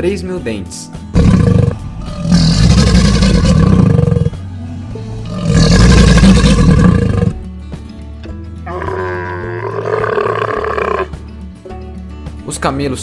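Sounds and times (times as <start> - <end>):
crocodile growling: 1.2 - 4.4, 5.2 - 7.4, 8.7 - 11.1.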